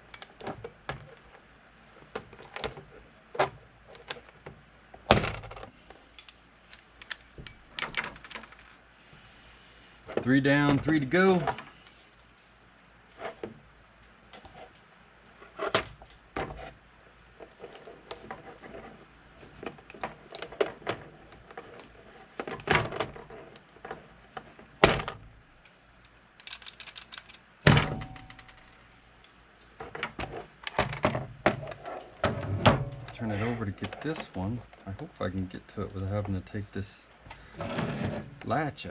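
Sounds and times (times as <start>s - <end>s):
plastic clicks taps and rattles: 26.4s - 27.4s.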